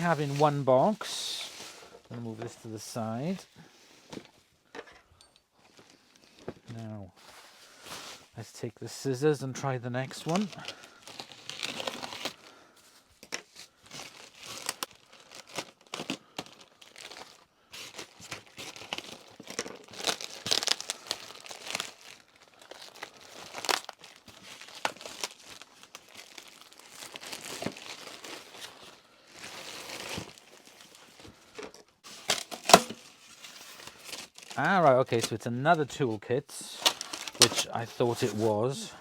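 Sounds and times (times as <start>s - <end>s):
packaging crumpling: 10.0s - 12.6s, 13.6s - 35.3s, 36.8s - 39.0s
tape and cardboard tearing: 11.1s - 12.4s, 32.1s - 33.6s.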